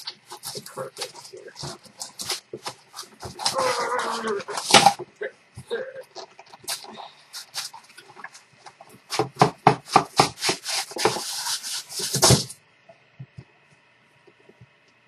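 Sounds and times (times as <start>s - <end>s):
styrofoam packing rustling: 0.0s - 5.0s, 6.1s - 12.6s.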